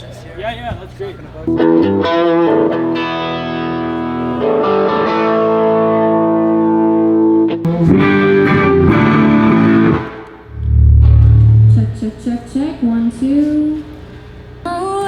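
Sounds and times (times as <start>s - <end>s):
electric guitar strumming chords: 1.5s - 13.2s.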